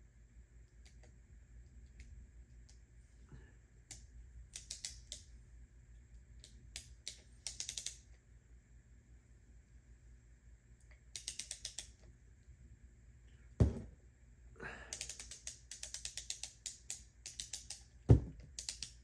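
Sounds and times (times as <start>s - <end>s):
thuds: 13.6s - 14.0s, 18.1s - 18.4s.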